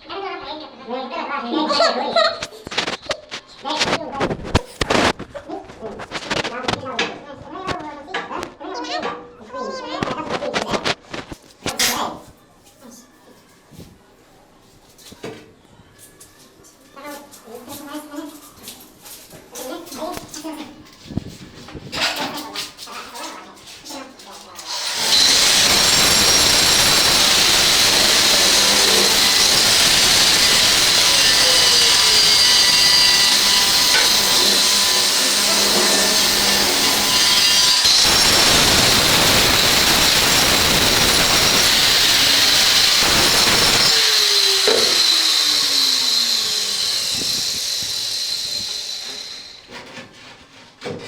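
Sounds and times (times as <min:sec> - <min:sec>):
power tool cutting stone: 0:24.6 - 0:49.8.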